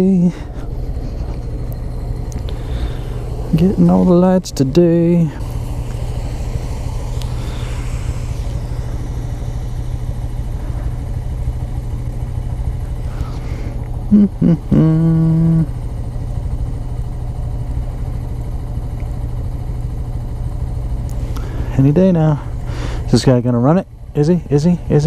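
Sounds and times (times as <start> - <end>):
motorcycle engine idling: 0.0 - 25.0
loud pitched tone: 1.5 - 12.5, 14.1 - 15.8.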